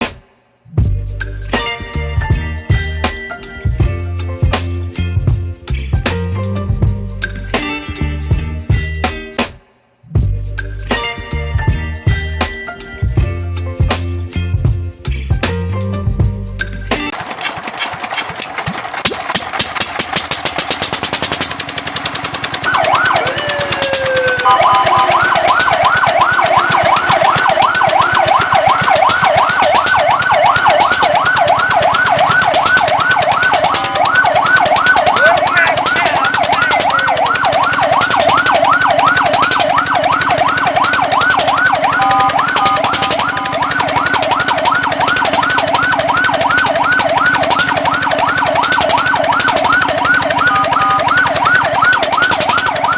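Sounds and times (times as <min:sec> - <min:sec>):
fire truck siren wailing and yelping: 0:17.1 - 0:52.9
rapid mechanical clatter: 0:17.1 - 0:52.9.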